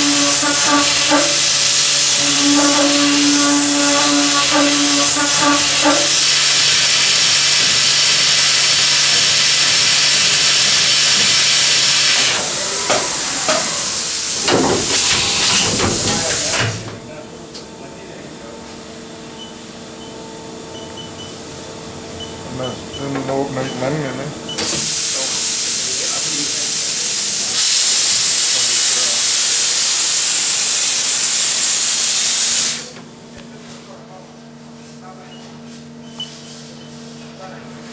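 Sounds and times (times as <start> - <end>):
thin high whine: 0.0 - 6.5
milling machine hiss: 0.0 - 17.0, 24.5 - 33.0.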